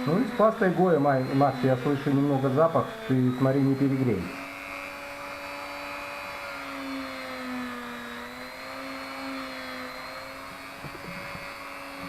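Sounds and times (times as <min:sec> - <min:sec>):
rotary tool whine: 0:00.0 - 0:12.0.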